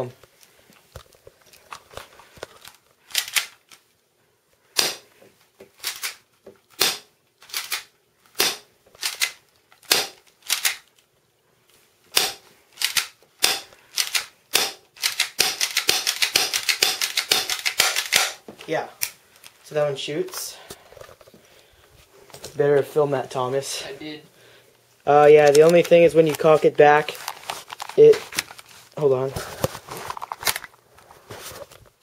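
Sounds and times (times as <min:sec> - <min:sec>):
airsoft pistol firing clacks: 0:09.9 - 0:10.8, 0:13.4 - 0:18.4.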